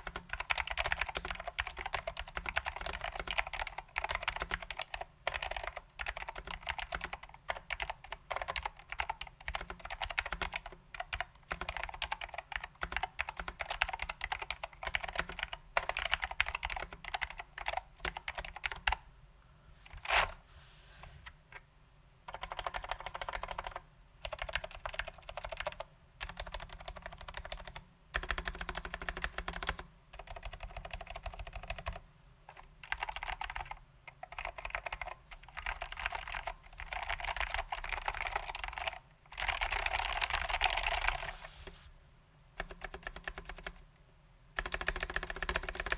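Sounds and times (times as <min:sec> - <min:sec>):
mechanical keyboard typing: 0:00.0 - 0:19.0, 0:22.3 - 0:41.4, 0:42.6 - 0:43.8, 0:44.6 - 0:45.9.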